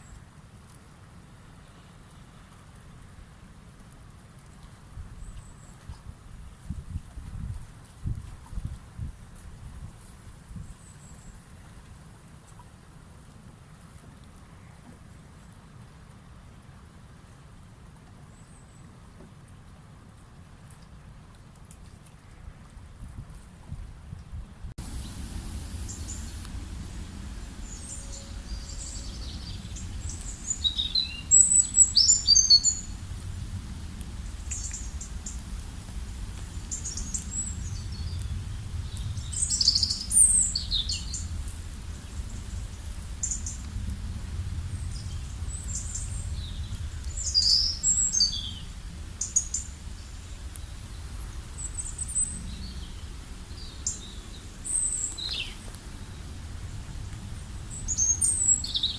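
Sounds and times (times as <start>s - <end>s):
river rumbling: 22.3s - 58.9s
songbirds chirping and singing: 25.8s - 33.0s.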